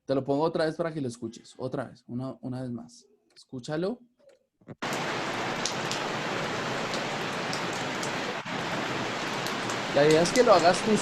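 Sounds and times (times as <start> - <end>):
rain hiss: 4.8 - 11.0
raindrop ticks: 4.8 - 11.0.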